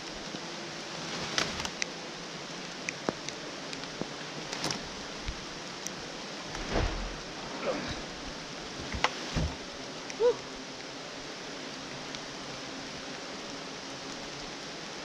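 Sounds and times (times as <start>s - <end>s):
rain hiss: 0.0s - 15.0s
dull thump: 6.6s - 7.3s, 8.8s - 9.6s.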